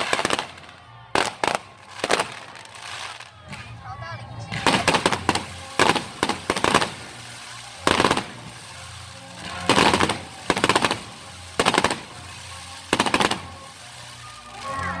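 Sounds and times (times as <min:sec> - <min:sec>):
fireworks bangs: 0:00.0 - 0:15.0.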